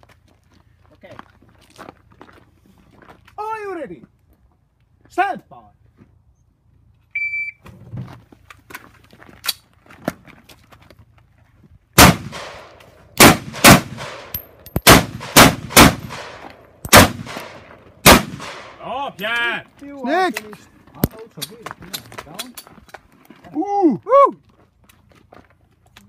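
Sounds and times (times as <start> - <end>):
rifle shots echoing: 12.0 - 18.8.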